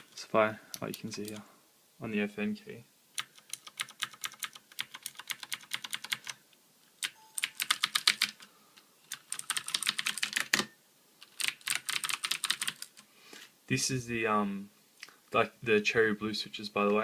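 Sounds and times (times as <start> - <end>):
clicky mechanical keyboard typing: 0.8 - 1.4, 3.2 - 6.4, 7.0 - 8.5, 9.1 - 13.0.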